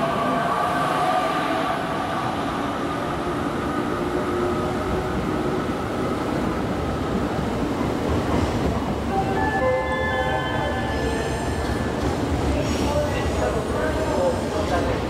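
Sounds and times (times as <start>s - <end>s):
train wheels rumbling on rails: 2.2s - 9.1s.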